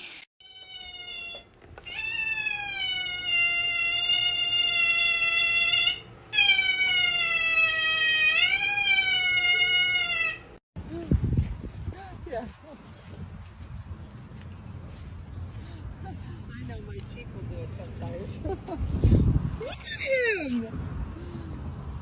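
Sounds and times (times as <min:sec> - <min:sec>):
animal long drawn-out calls: 0:00.4 - 0:10.6.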